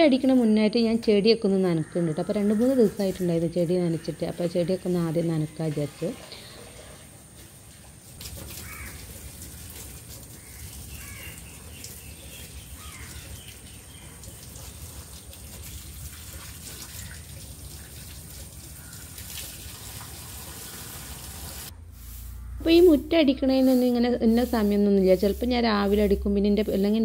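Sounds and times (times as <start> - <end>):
water running and splashing: 6.0 - 21.7
crows cawing: 8.5 - 9.2, 10.3 - 11.5, 12.8 - 13.2.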